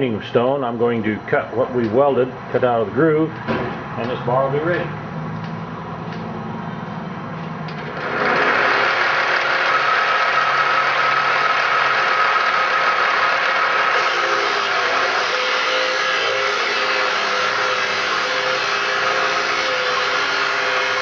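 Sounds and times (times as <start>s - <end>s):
grinding metal with high whine: 0.0s - 21.0s
grinder humming: 7.7s - 21.0s.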